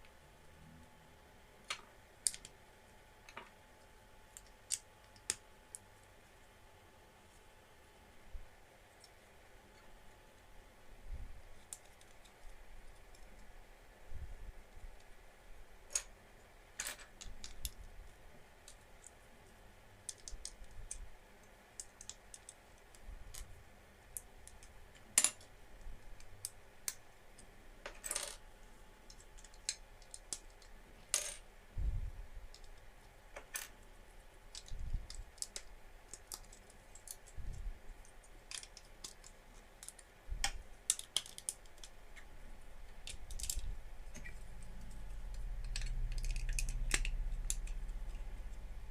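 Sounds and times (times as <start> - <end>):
plastic bricks clicking: 38.5 - 41.9.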